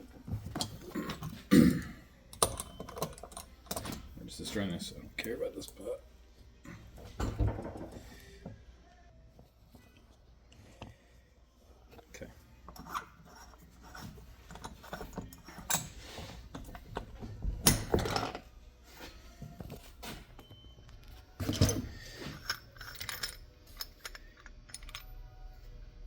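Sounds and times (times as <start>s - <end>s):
hand tools clicking and scraping metal: 12.7s - 17.1s, 21.4s - 25.2s.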